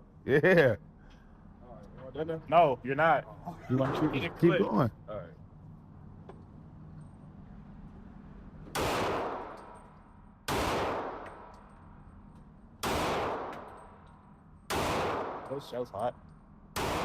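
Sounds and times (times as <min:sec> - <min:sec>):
gunshots with ringing echo: 0:08.7 - 0:09.9, 0:10.5 - 0:11.5, 0:12.8 - 0:14.0, 0:14.7 - 0:15.8, 0:16.8 - 0:17.0.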